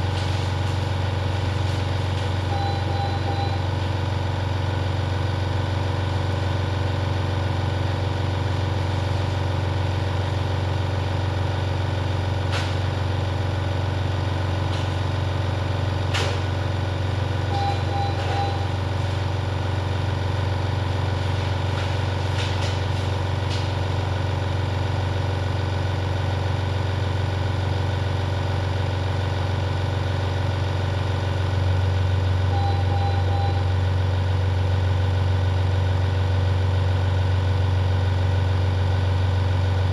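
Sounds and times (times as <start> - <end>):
monitor high beeps: 2.5 - 3.6, 17.6 - 18.8, 32.6 - 33.7.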